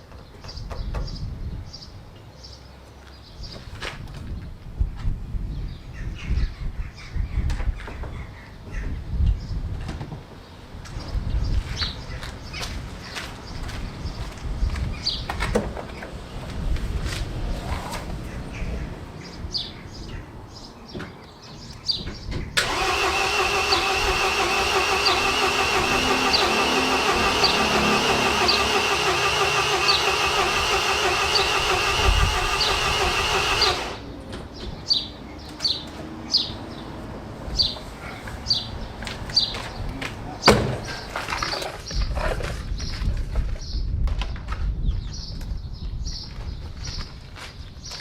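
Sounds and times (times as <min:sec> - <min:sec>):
bird chirping: 0:18.2 - 0:22.6
starter motor cranking engine: 0:22.6 - 0:34.1.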